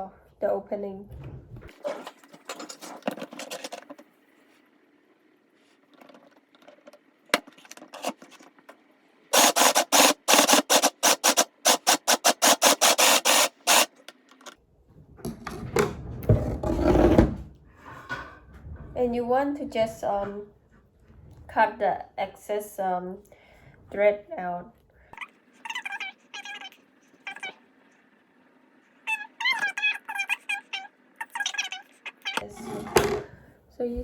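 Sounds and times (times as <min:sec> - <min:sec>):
rubbing and handling noise: 0:01.4 - 0:04.8, 0:05.5 - 0:08.8, 0:09.4 - 0:14.6
sewing machine clacking: 0:09.4 - 0:13.9.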